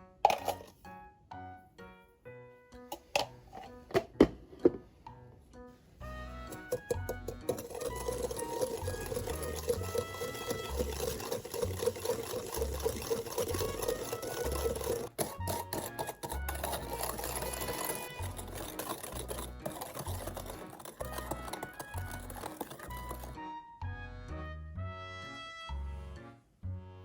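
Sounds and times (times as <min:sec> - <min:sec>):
background music with steady beat: 0:00.0 - 0:12.0, 0:19.4 - 0:27.0
small motor running: 0:06.5 - 0:23.4.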